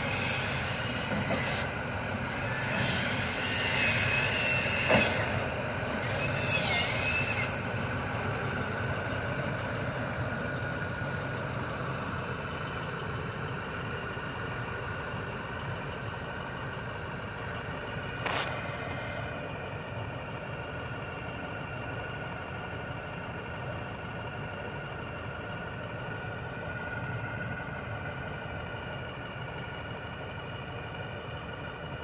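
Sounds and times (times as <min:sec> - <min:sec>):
air hissing: 0:00.0 - 0:07.6
diesel engine idling: 0:00.0 - 0:32.0.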